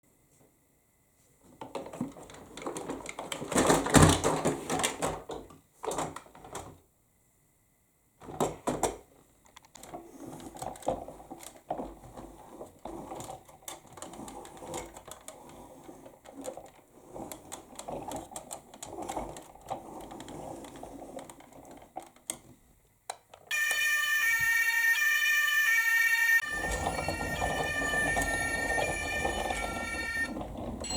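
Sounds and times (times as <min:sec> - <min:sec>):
toy cars clicking and rattling: 0:09.4 - 0:22.5, 0:26.5 - 0:30.9
toy electronic siren: 0:23.5 - 0:30.9.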